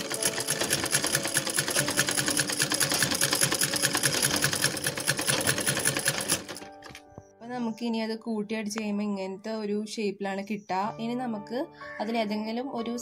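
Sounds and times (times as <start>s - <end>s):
sewing machine running: 0.0s - 7.0s.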